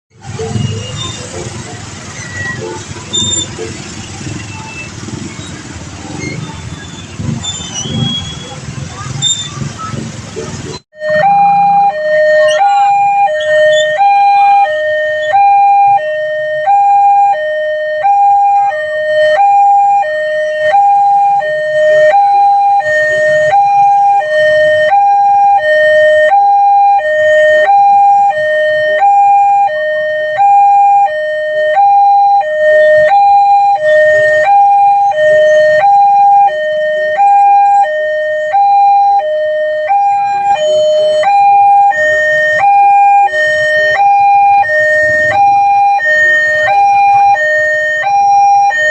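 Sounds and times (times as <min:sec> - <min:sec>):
level-crossing two-tone alarm: 0:11.0 - 0:48.9.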